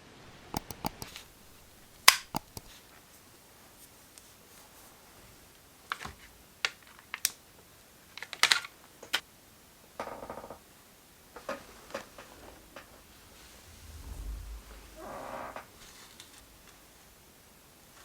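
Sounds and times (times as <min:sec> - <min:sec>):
laptop keyboard clicks: 0:00.3 - 0:02.8.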